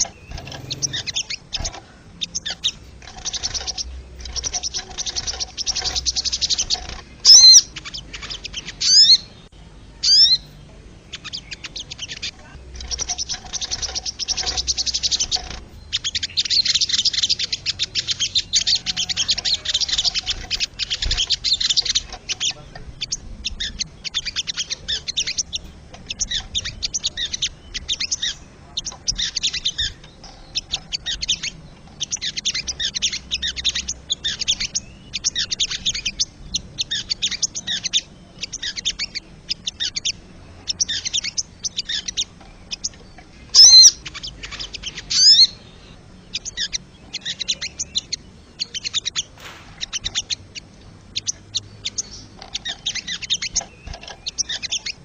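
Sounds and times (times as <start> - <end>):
bird whistled notes: 0.0 - 7.7, 43.5 - 45.6
bird chattering trills: 0.0 - 55.0.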